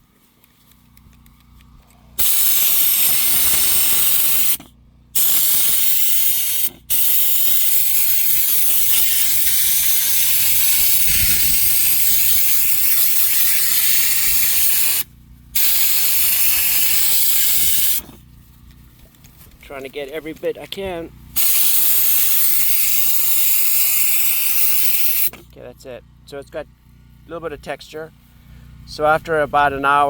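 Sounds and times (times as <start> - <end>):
spray gun hissing: 2.2 - 4.6, 5.2 - 18.0, 21.4 - 25.4.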